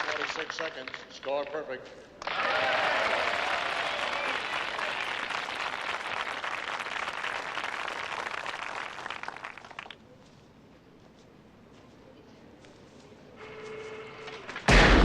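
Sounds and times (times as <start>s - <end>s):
crowd applauding: 0.0s - 1.1s, 2.2s - 10.0s.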